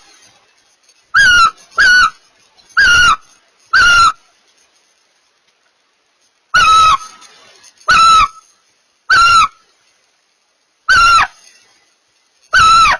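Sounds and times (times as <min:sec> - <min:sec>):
barn owl calling: 0:01.1 - 0:02.2, 0:02.8 - 0:04.2, 0:06.6 - 0:07.2, 0:07.9 - 0:08.5, 0:09.1 - 0:09.6, 0:10.9 - 0:11.5, 0:12.5 - 0:12.9.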